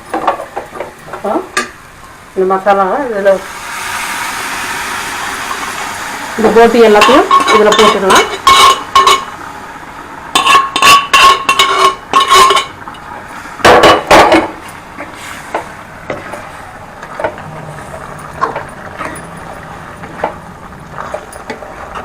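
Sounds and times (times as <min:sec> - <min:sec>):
scraping in a pot: 0:04.9 - 0:09.3, 0:10.3 - 0:12.8
metal cookware clanking: 0:06.5 - 0:09.3, 0:10.3 - 0:12.8, 0:16.1 - 0:20.4.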